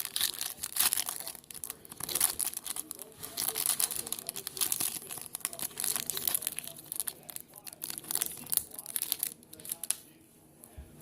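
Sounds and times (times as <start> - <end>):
foil wrapper tearing and crinkling: 0.0 - 10.0.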